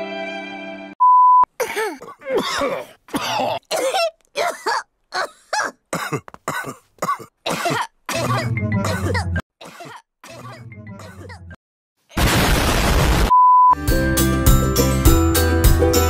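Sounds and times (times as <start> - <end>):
cartoon character coughing: 1.6 - 11.6
short electronic beep: 13.3 - 13.8.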